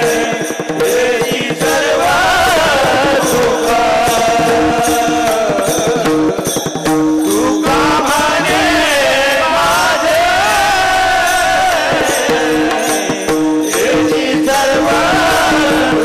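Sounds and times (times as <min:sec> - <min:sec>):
hand cymbals striking a beat: 0:00.0 - 0:16.0
man singing: 0:00.0 - 0:16.0.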